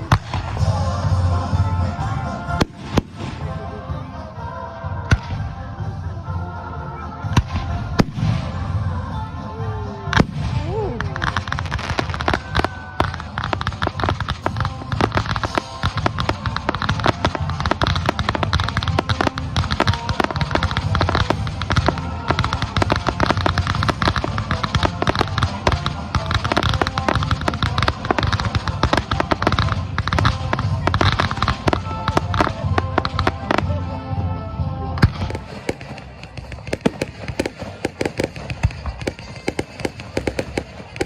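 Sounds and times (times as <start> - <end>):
fireworks bangs and crackles: 0.0 - 41.0.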